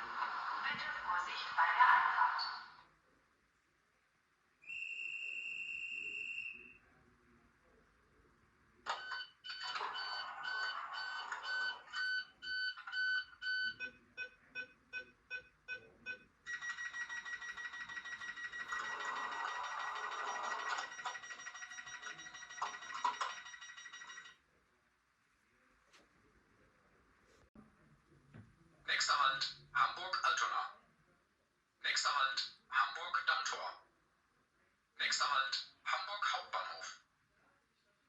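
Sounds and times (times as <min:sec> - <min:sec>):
electronic warning beeps: 0:08.9 - 0:24.3.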